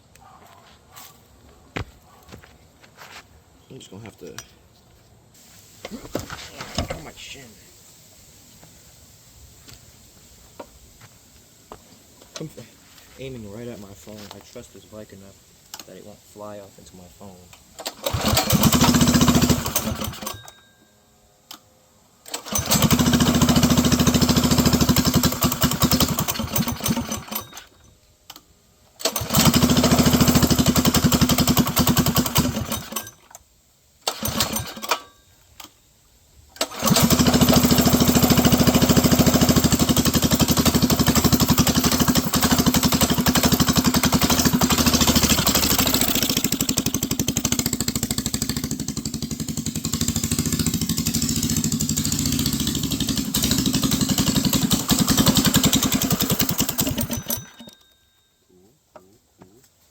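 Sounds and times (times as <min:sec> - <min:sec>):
small gasoline engine running: 0:17.8 - 0:20.6, 0:22.3 - 0:27.8, 0:29.0 - 0:33.2, 0:34.1 - 0:35.2, 0:36.6 - 0:57.9.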